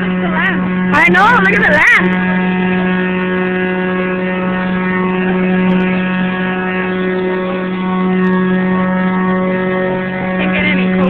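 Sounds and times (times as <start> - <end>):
steady machine hum: 0.0 - 11.0.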